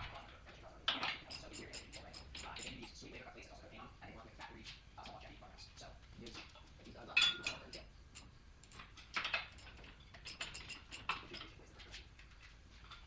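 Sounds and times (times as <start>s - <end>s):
metal tools clinking: 0.5s - 3.0s, 6.8s - 13.0s
ringing metal clink: 0.9s - 3.0s, 7.1s - 12.6s.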